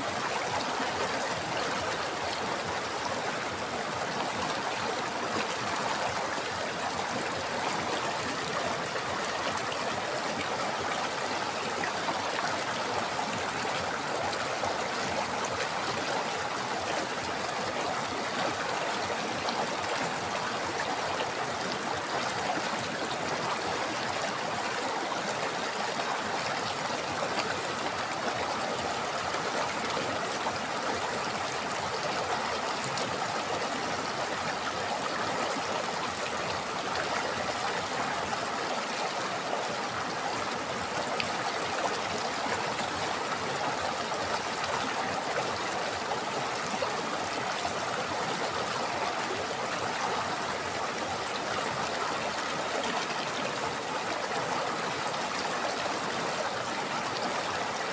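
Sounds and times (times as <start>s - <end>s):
stream water flowing: 0.0s - 57.9s.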